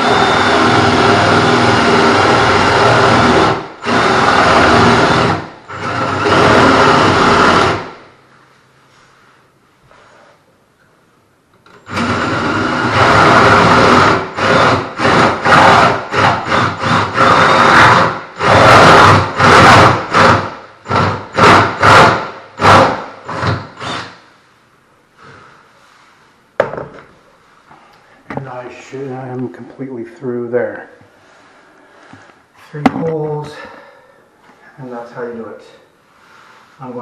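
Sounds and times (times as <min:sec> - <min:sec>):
power drill boring wood: 0:00.0 - 0:08.0, 0:11.8 - 0:24.2.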